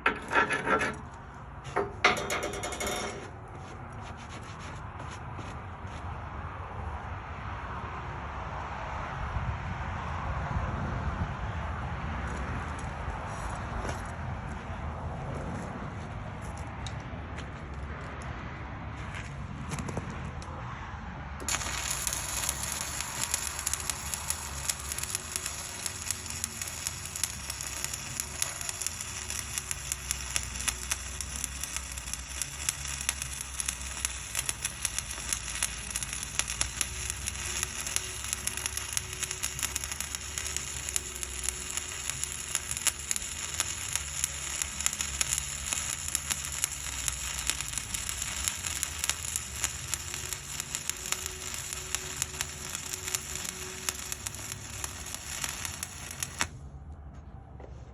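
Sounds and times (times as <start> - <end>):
welding arc crackling and sizzling: 0.0 - 5.2, 21.4 - 56.6.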